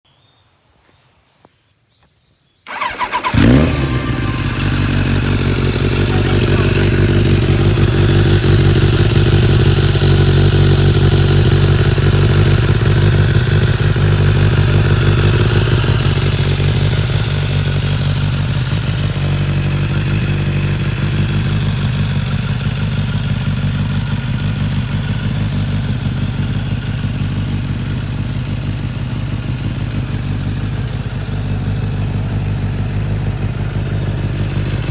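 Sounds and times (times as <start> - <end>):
motorcycle engine cranking: 2.7 - 24.4
motorcycle engine idling: 2.7 - 34.9.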